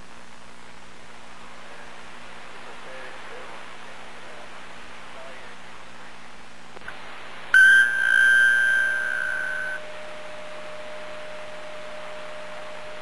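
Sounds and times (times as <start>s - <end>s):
radio hiss: 1.0s - 13.0s
high-pitched electronic squeal: 7.6s - 9.9s.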